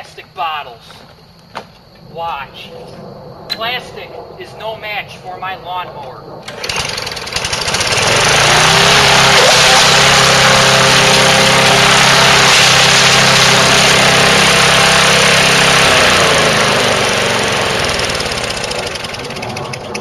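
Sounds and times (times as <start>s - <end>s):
lawn mower engine running: 6.4s - 20.0s.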